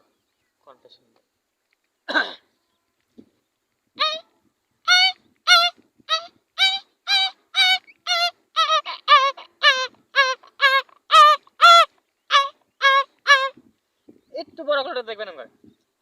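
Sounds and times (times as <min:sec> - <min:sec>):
man imitating puppy whines: 0:04.0 - 0:04.2, 0:04.9 - 0:13.6.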